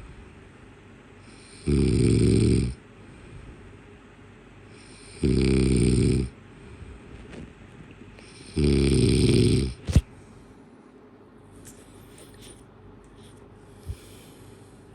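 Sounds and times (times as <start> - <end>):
loud buzzy breath sounds: 13.2 - 14.9.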